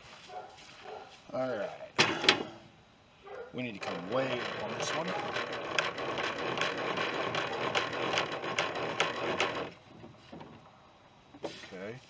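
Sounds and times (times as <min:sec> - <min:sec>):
crank rattling with small clicks: 0:03.8 - 0:09.8.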